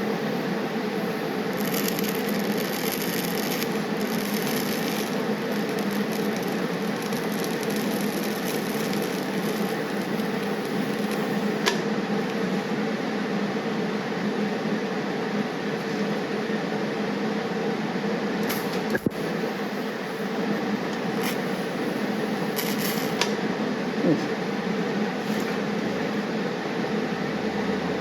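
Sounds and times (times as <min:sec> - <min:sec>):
machine hum: 0:00.0 - 0:28.0
high crackling: 0:01.4 - 0:11.8.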